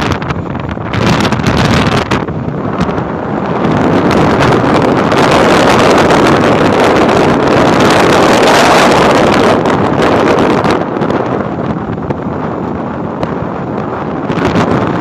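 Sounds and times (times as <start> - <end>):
ship engine drone: 0.0 - 15.0
wind buffeting microphone: 0.0 - 15.0.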